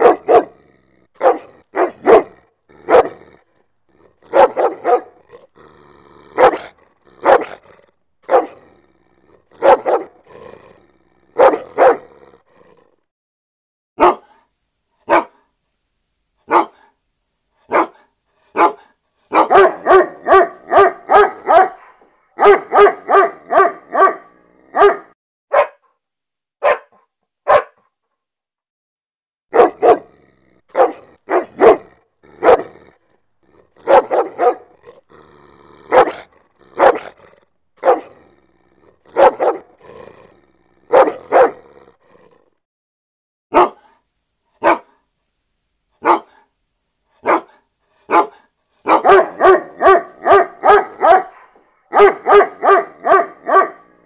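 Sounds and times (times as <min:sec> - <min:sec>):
dog barking aggressively: 0:00.0 - 0:08.8, 0:09.5 - 0:12.2, 0:14.0 - 0:14.4, 0:15.1 - 0:15.4, 0:16.5 - 0:16.9, 0:17.7 - 0:25.8, 0:26.6 - 0:27.8, 0:29.5 - 0:41.9, 0:43.5 - 0:44.0, 0:44.6 - 0:45.0, 0:46.0 - 0:46.5, 0:47.2 - 0:54.0.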